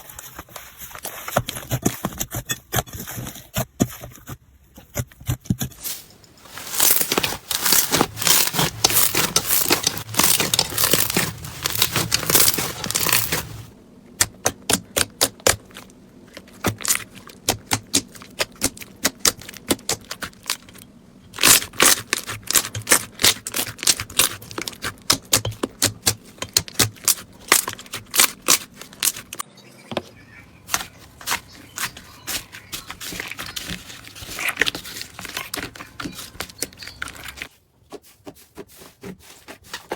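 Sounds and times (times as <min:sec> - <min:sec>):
slime crackling and popping: 0:06.6 - 0:20.8, 0:21.4 - 0:29.4.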